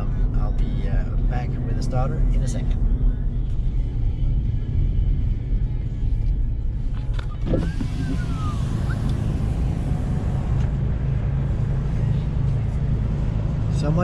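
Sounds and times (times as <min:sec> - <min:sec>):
car interior driving rumble: 0:00.0 - 0:14.0.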